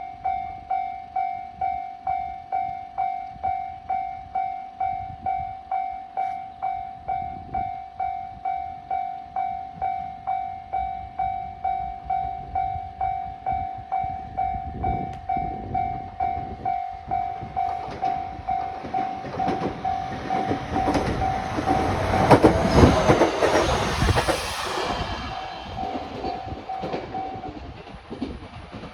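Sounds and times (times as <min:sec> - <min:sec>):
level crossing warning bell dinging: 0:00.0 - 0:23.3
train wheels clacking over rail joints: 0:17.5 - 0:28.9.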